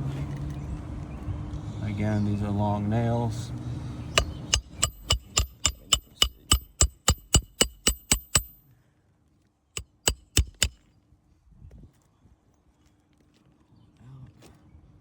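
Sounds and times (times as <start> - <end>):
hammer driving nails into shingle: 4.2 - 8.6, 9.8 - 10.8.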